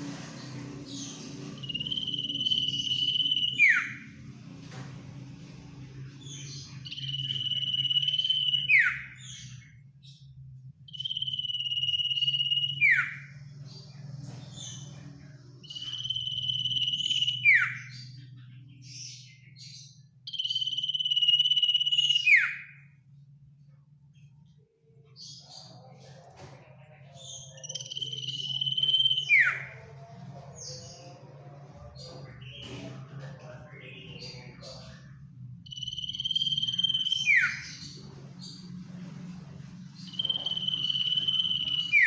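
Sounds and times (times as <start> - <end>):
low steady hum: 0.0 - 42.0
bird whistling call: 1.6 - 4.0, 40.1 - 42.0.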